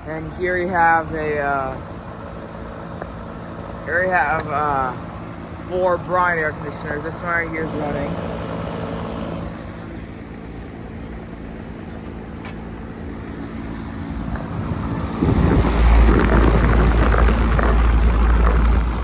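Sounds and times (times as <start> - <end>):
loud low rumble: 12.9 - 19.0.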